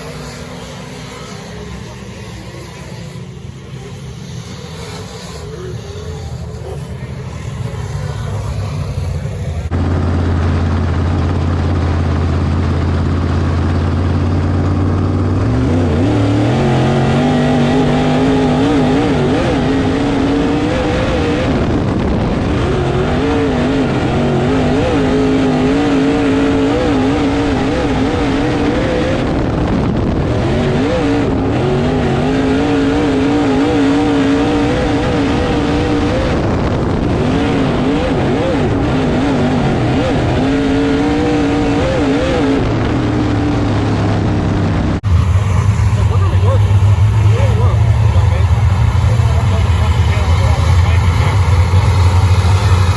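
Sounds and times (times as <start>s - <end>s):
race car engine running hard: 0.0s - 52.9s.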